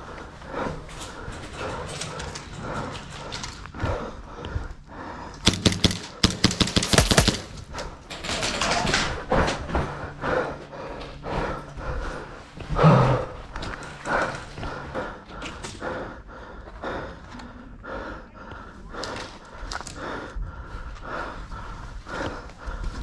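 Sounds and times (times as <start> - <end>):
airsoft gun shots: 5.5 - 7.7.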